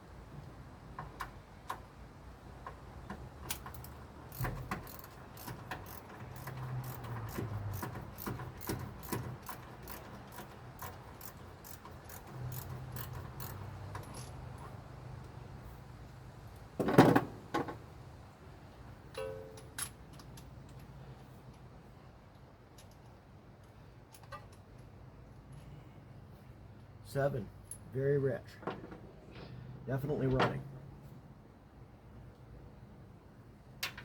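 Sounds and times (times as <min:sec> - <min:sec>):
ratchet wrench clicking: 0:03.5 - 0:14.4.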